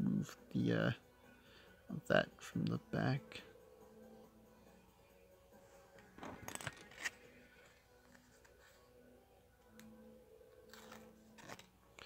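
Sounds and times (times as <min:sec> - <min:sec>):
sticker backing rustling: 0:06.1 - 0:08.9.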